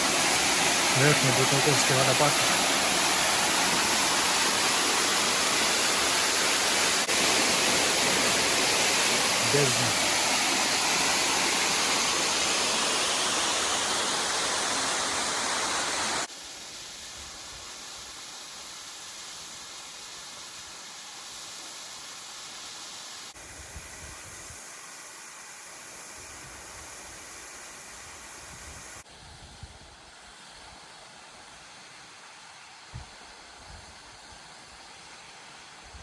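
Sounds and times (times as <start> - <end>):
waterfall roaring: 0.0 - 16.3.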